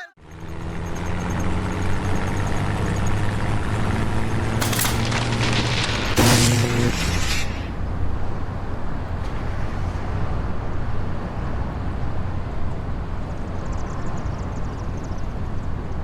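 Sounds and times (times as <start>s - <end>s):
loud noisy blast with tone: 4.6s - 7.8s
heavy machinery rumbling: 4.6s - 12.0s.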